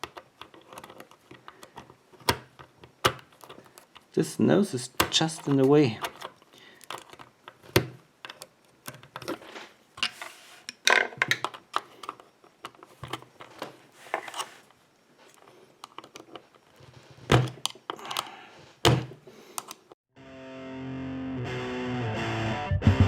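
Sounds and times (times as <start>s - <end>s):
screwdrivers scraping lock cylinder: 0.0s - 4.2s, 4.8s - 18.3s, 19.5s - 20.0s.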